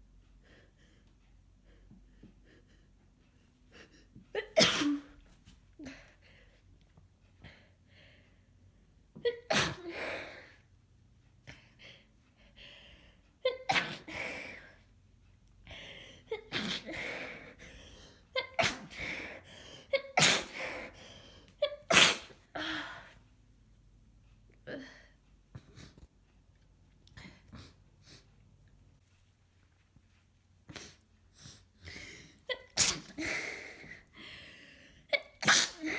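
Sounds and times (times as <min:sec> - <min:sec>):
person sneezing: 0:04.4 - 0:05.2, 0:09.4 - 0:10.2, 0:13.7 - 0:14.3, 0:16.3 - 0:17.4, 0:18.4 - 0:20.9, 0:21.6 - 0:23.0, 0:32.5 - 0:33.9, 0:35.1 - 0:35.9
sniffs and breaths: 0:30.0 - 0:35.1.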